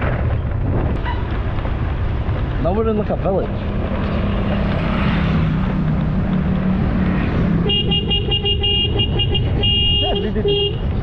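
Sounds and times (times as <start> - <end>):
wind noise: 0.0 - 11.0
vehicle horn honking: 7.6 - 10.8.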